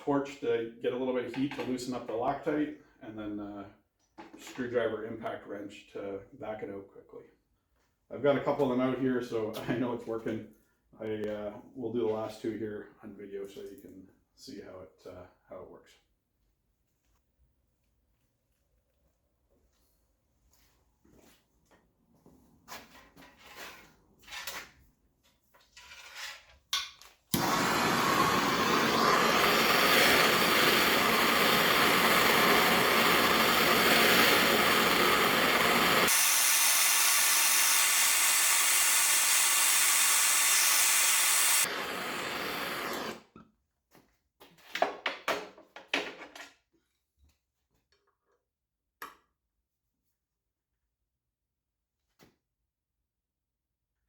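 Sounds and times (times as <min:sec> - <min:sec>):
torch burning with a hiss: 0:27.3 - 0:43.2.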